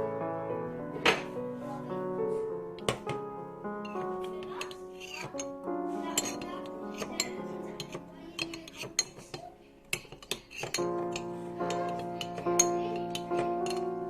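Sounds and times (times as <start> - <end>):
instrumental background music: 0.0 - 14.0
utensils clinking against dishes: 3.9 - 13.9.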